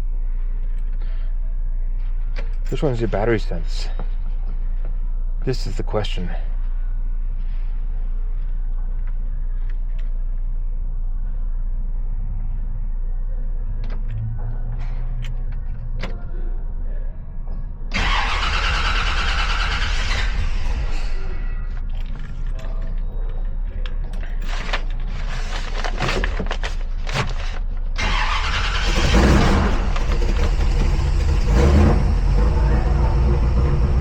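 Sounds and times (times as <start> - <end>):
car engine idling: 17.9 - 34.0.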